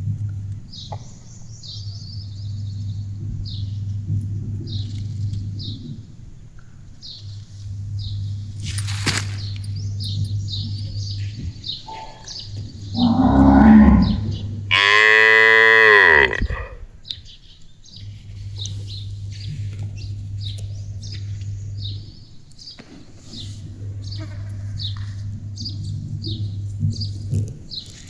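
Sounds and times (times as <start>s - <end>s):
cow mooing: 11.8s - 16.8s.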